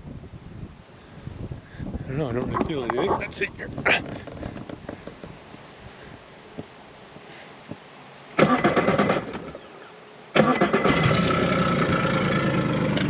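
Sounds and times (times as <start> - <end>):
crickets chirping: 0.0 - 10.9
outboard motor starting and running: 8.4 - 9.7, 10.4 - 13.0.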